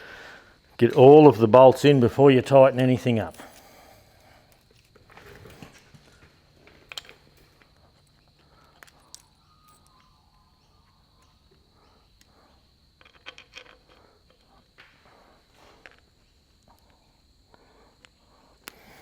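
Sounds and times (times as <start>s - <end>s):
metallic clicks and scrapes of bolts: 13.0s - 14.5s.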